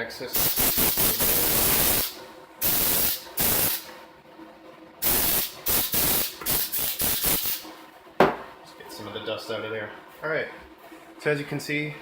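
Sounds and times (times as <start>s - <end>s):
compressed air hissing: 0.3s - 3.9s, 5.0s - 7.7s.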